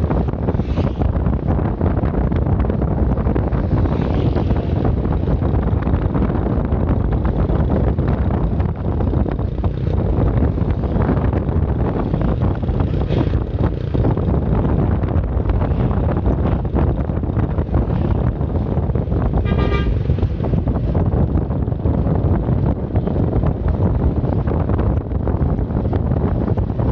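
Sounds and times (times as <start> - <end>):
road and vehicle noise: 0.0 - 26.9
wind rumble on microphone: 0.0 - 26.9
vehicle horn toot: 19.4 - 20.0.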